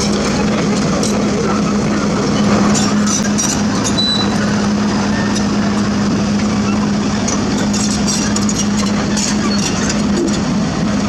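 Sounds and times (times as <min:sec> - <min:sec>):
diesel machinery humming: 0:00.0 - 0:11.0.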